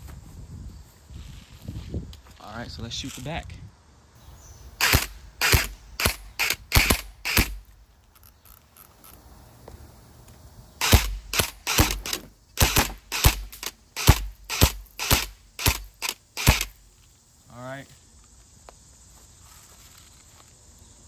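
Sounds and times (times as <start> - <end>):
airsoft gun shots: 4.8 - 7.7, 10.8 - 16.8.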